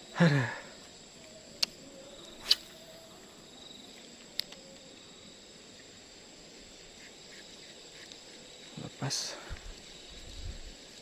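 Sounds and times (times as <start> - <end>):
insects chirring: 0.0 - 11.0
sharp swish-like click: 2.4 - 2.7.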